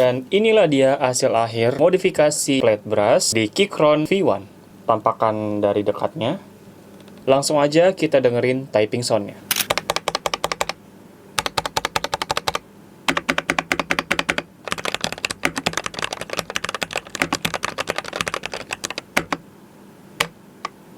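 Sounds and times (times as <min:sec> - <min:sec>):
mechanical keyboard typing: 0:09.6 - 0:10.8, 0:11.4 - 0:19.4.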